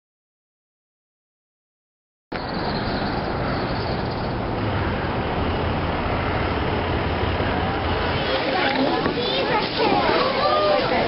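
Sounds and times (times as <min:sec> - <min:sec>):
outdoor background rumble: 0:02.4 - 0:11.0.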